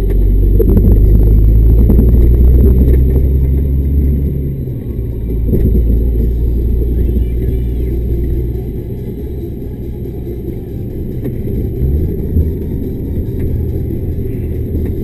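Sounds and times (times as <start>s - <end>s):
diesel lorry engine pulling heavily: 0.0s - 15.0s
rattles and knocks in cab: 0.1s - 7.3s.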